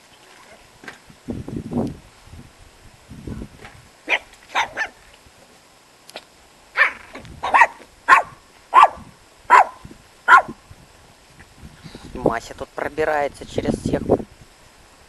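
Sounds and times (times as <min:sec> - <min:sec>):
small dog yapping: 0:04.0 - 0:05.0, 0:06.8 - 0:10.6.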